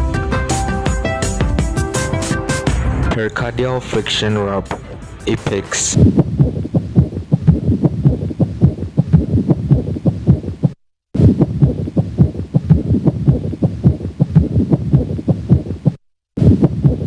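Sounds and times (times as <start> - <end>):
heartbeat with rubbing sounds: 3.1 - 17.0.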